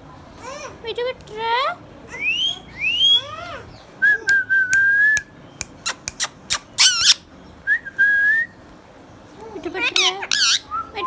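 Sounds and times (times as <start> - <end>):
parrot sharp clicks: 5.6 - 7.2
parrot whistling: 5.8 - 7.2, 9.8 - 10.9.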